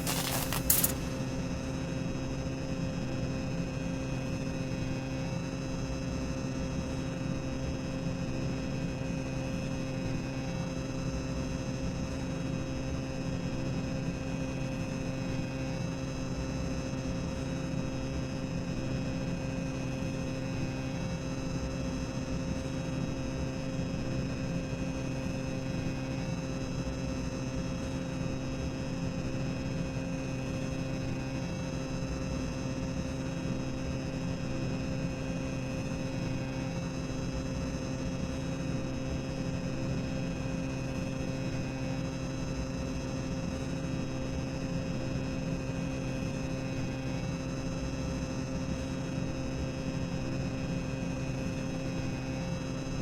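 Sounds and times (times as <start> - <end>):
mechanical hum: 0.0 - 1.8.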